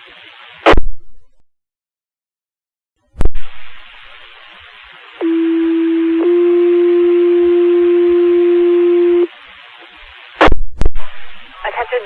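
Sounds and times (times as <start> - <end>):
radio hiss: 0.0 - 0.8, 3.2 - 12.0
two-tone radio paging tones: 5.2 - 9.3.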